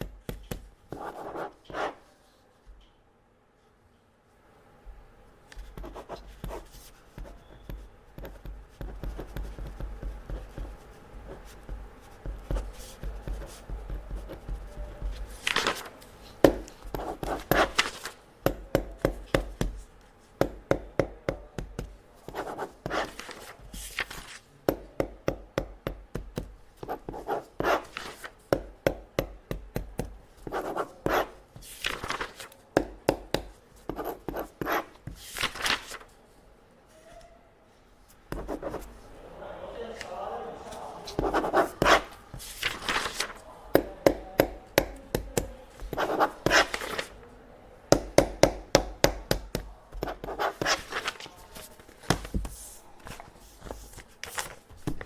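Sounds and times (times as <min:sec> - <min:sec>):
pen scratching on paper: 0:00.9 - 0:02.0, 0:05.6 - 0:15.7, 0:16.4 - 0:17.8, 0:22.2 - 0:24.0, 0:26.8 - 0:28.2, 0:30.4 - 0:31.4, 0:33.9 - 0:35.0, 0:38.3 - 0:38.9, 0:41.1 - 0:43.2, 0:44.1 - 0:47.1, 0:49.9 - 0:51.0.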